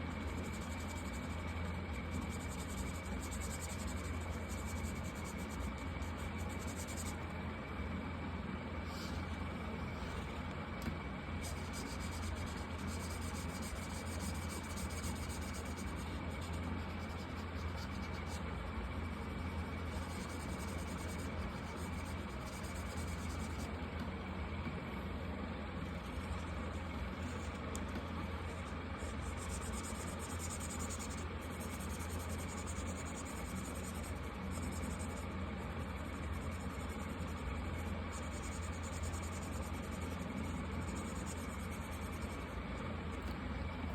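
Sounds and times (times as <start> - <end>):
steady low hum: 0.0 - 43.9
markers rubbing across paper: 0.1 - 7.2, 11.4 - 18.4, 19.7 - 23.8, 26.0 - 42.6.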